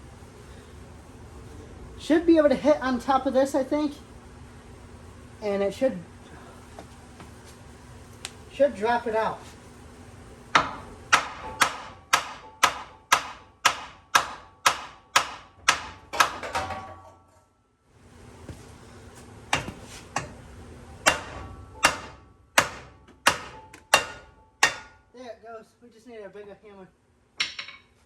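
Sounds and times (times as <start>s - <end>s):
hammer striking metal: 10.6s - 17.2s, 21.0s - 25.1s.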